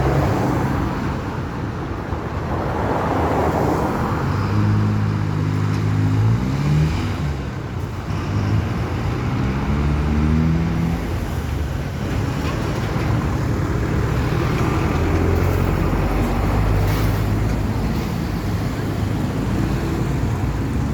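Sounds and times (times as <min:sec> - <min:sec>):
road noise: 0:00.0 - 0:20.9
vehicle engine pulling away: 0:04.8 - 0:11.6.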